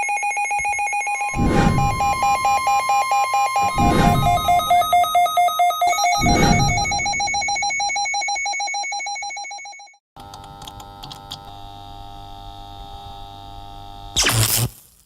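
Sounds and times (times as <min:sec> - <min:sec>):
rapid electronic beeping: 0:01.2 - 0:08.5
steady electronic hum: 0:01.4 - 0:05.0.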